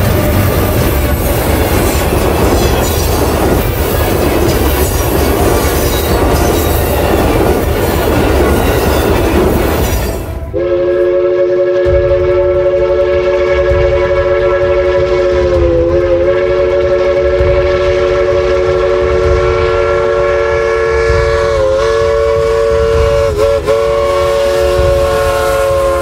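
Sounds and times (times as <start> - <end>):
train rumbling: 0.0 - 26.0
locomotive air horn: 8.2 - 26.0.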